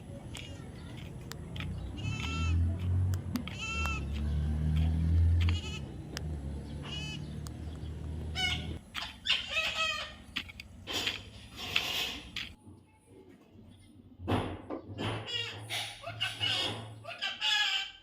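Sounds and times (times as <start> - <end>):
baby parrot bleating calls: 2.0 - 2.6, 3.5 - 4.1, 5.4 - 5.9, 6.8 - 7.4, 8.4 - 10.2, 15.3 - 18.0.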